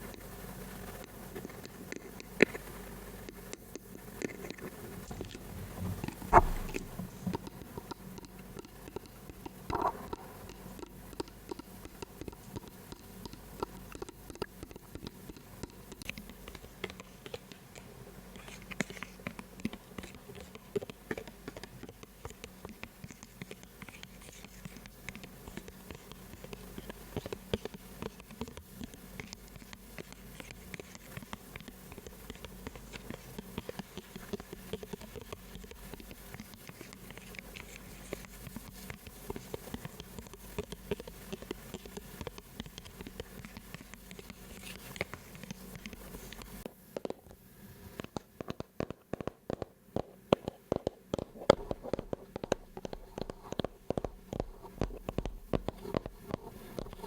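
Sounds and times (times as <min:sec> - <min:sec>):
faint low hum: 0:00.0 - 0:14.2
small taps and clicks: 0:18.5 - 0:57.0.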